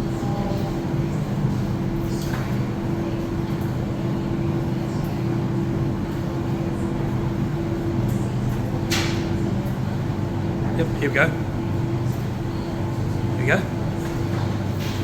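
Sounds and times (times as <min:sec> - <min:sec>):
tumble dryers humming: 0:05.2 - 0:15.0.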